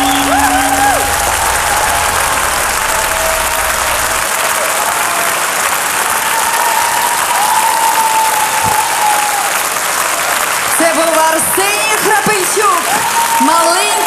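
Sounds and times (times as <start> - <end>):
backing music: 0.0 - 4.9
audience applauding: 0.0 - 14.0.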